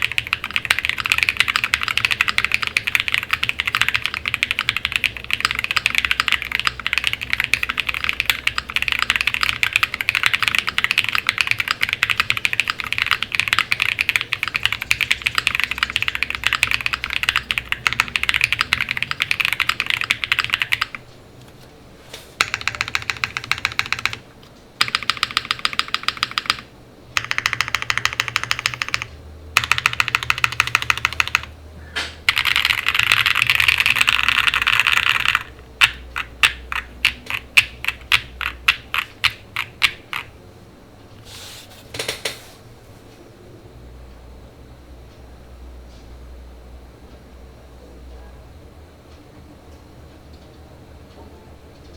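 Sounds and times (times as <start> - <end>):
mechanical keyboard typing: 0.0 - 21.0, 22.4 - 24.2, 24.8 - 31.5, 32.3 - 40.3.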